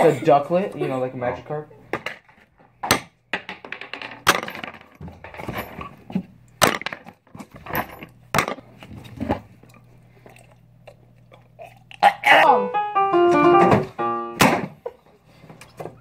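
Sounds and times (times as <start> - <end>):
sharp cracks and knocks: 6.6 - 7.5.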